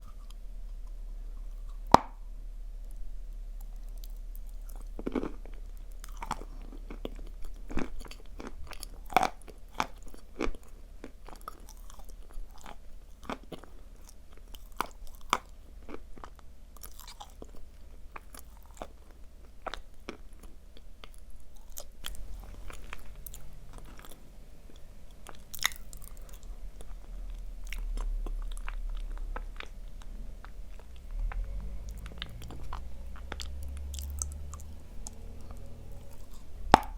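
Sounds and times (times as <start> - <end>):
low hum: 0.0 - 7.7, 21.5 - 36.9
crunchy chewing: 3.6 - 36.9.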